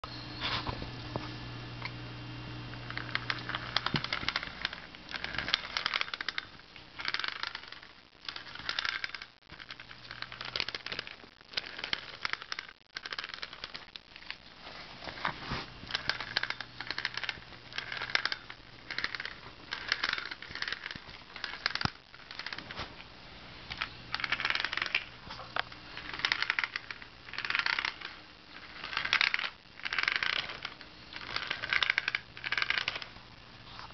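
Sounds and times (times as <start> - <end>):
rc truck rapid clicking: 2.9 - 14.0, 15.9 - 22.8, 23.7 - 25.1, 26.0 - 33.1.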